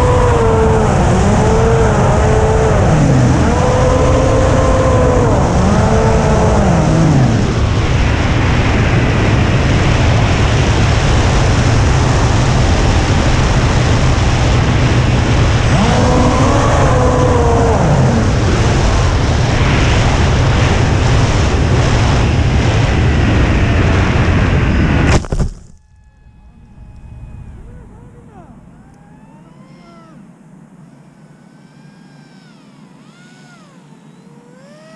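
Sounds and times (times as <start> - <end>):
electric motor and propeller drone: 0.0 - 24.8, 25.8 - 34.9
wind rush: 0.0 - 25.2
wavering tone: 25.7 - 34.9.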